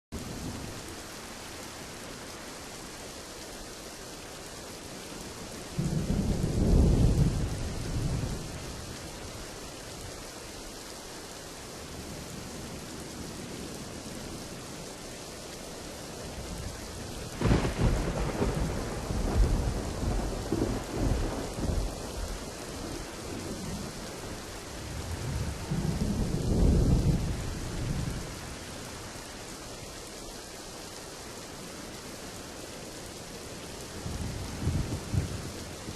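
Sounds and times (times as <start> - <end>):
steady rain: 0.1 - 35.9
thunder rumbling: 5.7 - 9.2, 16.3 - 29.0, 33.8 - 35.9.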